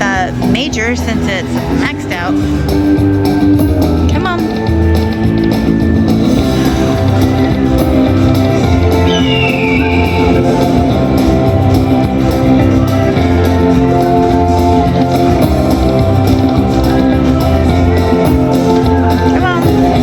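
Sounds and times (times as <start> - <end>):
slot machine bonus music: 8.7 - 13.3.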